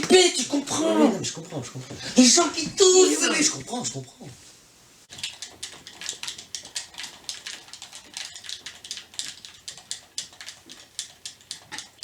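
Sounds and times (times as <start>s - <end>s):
light clicking and tapping: 5.1s - 12.0s.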